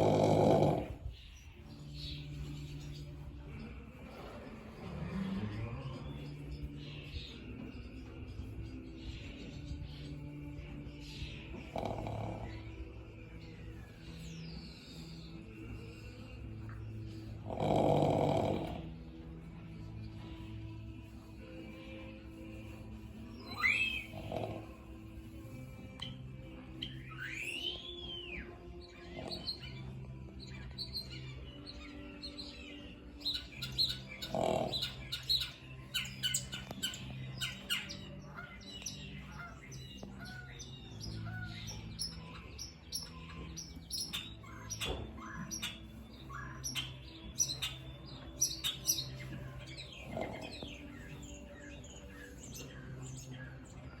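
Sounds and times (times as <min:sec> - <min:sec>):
horse snoring: 0:00.0 - 0:01.3, 0:02.3 - 0:06.6, 0:11.5 - 0:12.8, 0:17.1 - 0:19.3, 0:23.9 - 0:25.2, 0:29.0 - 0:29.8, 0:33.5 - 0:35.2, 0:49.5 - 0:51.3
small birds chirping: 0:00.0 - 0:54.0.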